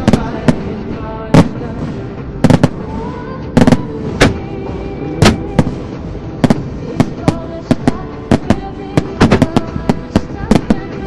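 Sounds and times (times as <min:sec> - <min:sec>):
music playing: 0:00.0 - 0:11.0
firework shells bursting: 0:02.4 - 0:02.8, 0:05.2 - 0:11.0.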